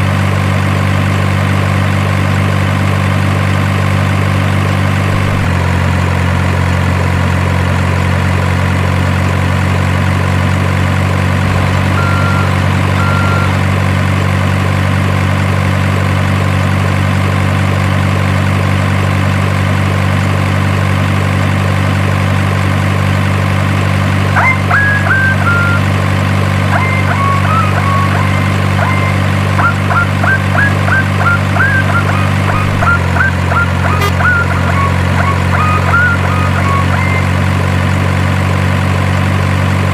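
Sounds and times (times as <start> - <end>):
engine idling drone: 0.0 - 39.9
short high chirping tones: 11.6 - 13.6, 26.7 - 37.3.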